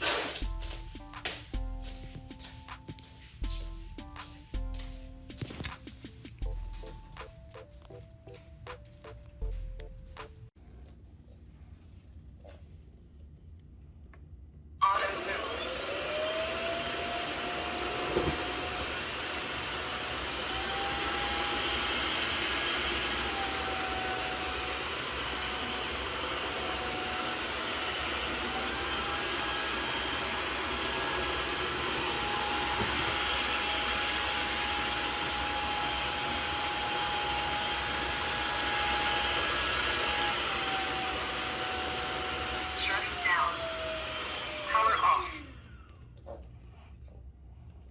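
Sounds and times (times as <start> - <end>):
vacuum motor whine: 14.8 - 46.2.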